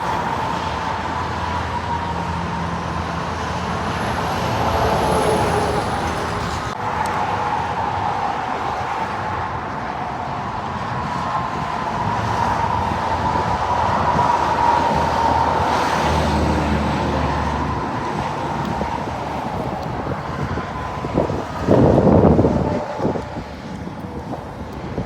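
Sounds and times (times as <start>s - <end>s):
vehicle road noise rushing: 0.0s - 25.0s.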